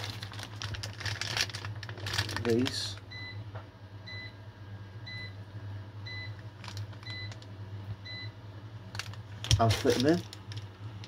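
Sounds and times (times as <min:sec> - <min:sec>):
washing machine beeping: 0:03.1 - 0:07.4, 0:08.0 - 0:08.4.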